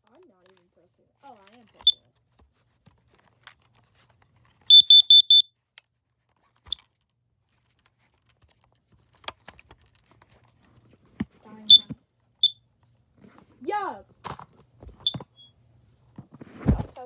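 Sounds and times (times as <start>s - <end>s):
smoke alarm beeps: 4.7s - 5.5s
smoke alarm chirp: 4.7s - 5.5s.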